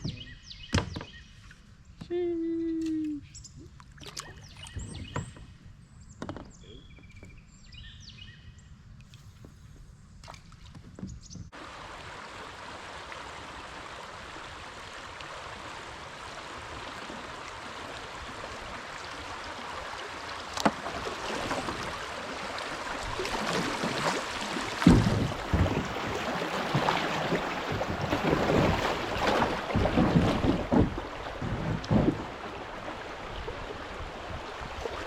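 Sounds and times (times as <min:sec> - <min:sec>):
creek water flowing: 0:11.5 - 0:35.0.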